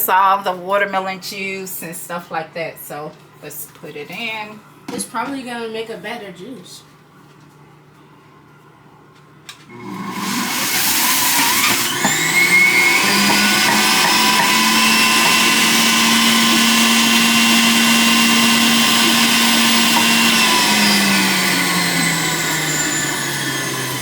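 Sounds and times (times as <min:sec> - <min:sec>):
juicer motor whirring: 0:09.7 - 0:24.0.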